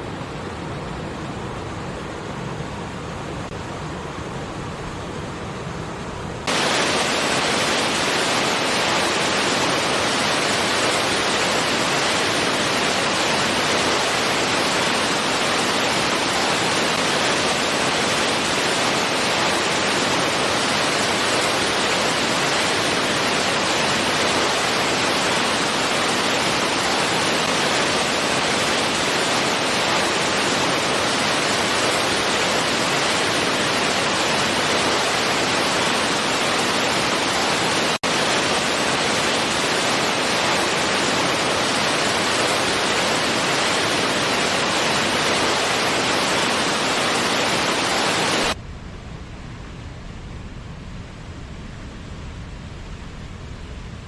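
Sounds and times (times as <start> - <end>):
water rushing over rocks: 6.5 - 48.6.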